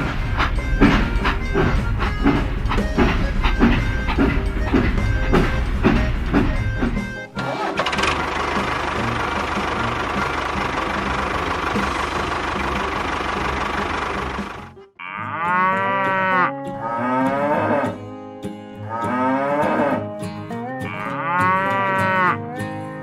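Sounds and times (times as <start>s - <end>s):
small engine running: 0.0s - 14.8s
cow mooing: 15.0s - 18.0s, 18.8s - 20.1s, 20.7s - 22.5s.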